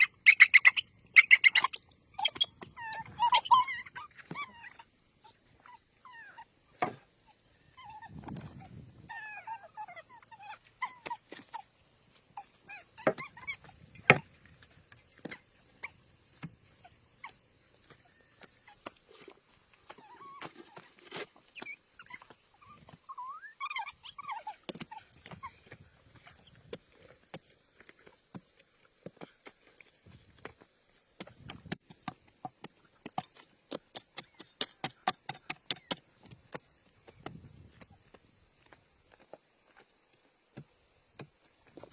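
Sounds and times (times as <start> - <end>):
small animal whimpering: 0.0 - 6.5, 7.2 - 11.7, 19.9 - 21.0, 21.6 - 26.6.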